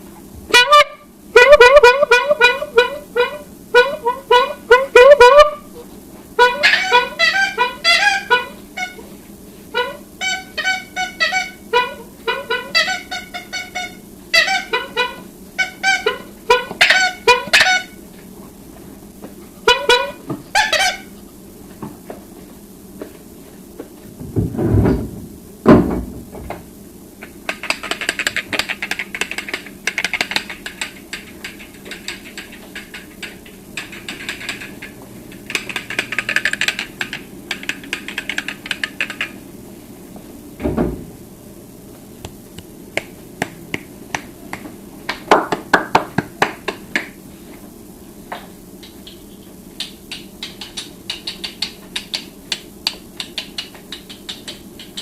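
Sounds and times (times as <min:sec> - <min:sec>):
loud knocks: 0:24.2 - 0:26.6
sharp clicks and taps: 0:27.2 - 0:39.4, 0:49.8 - 0:55.0.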